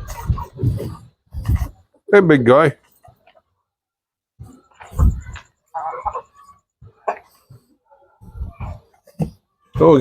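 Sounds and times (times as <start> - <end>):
chicken clucks: 4.6 - 8.8.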